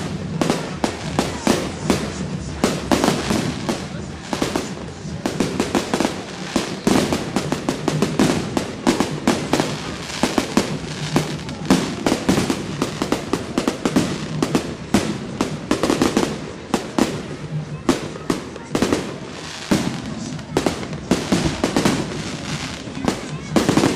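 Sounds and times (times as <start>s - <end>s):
fireworks bangs and cracks: 0.0s - 23.9s.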